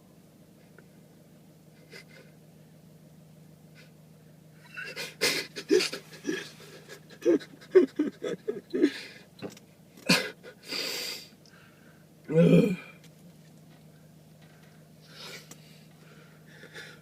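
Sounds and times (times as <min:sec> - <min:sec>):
long hissing breath: 0:10.6 - 0:12.1, 0:15.0 - 0:17.0
man sneezing: 0:12.3 - 0:13.0.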